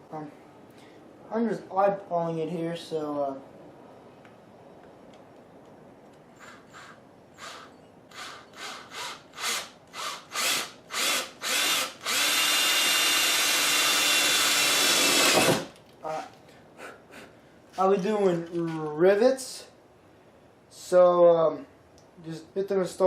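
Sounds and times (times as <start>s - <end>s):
power drill whining: 6.4s - 15.7s.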